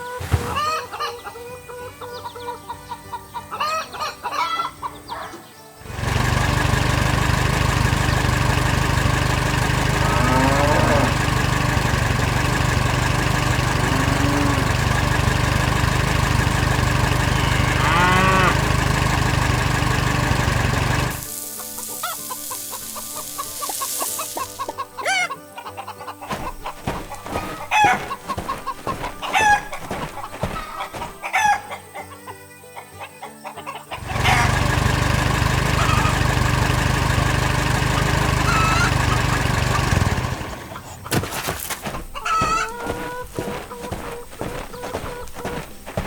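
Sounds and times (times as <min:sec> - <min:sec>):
light background music: 0:00.0 - 0:05.9, 0:21.2 - 0:34.4
chickens clucking: 0:00.0 - 0:46.0
rooster crowing: 0:22.0 - 0:25.4, 0:26.3 - 0:32.2, 0:41.8 - 0:46.0.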